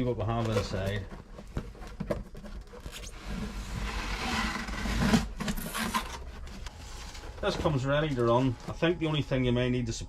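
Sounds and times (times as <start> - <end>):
cardboard box scraping and rustling: 0.3 - 8.5.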